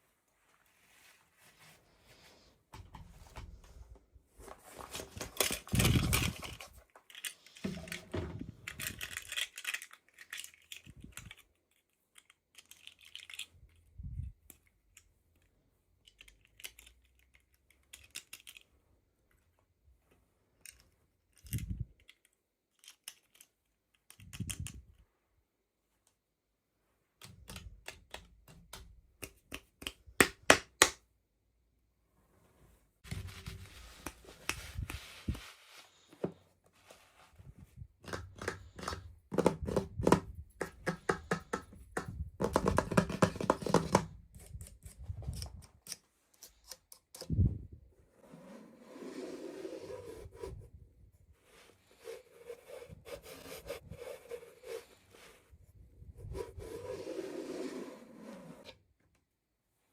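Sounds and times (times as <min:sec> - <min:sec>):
plastic toy pieces clicking: 0:08.6 - 0:13.5, 0:16.0 - 0:18.7, 0:20.6 - 0:24.8.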